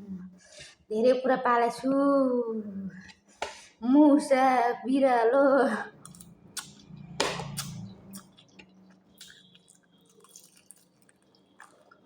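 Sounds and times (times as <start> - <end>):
wet chewing and lip smacks: 6.0 - 12.0.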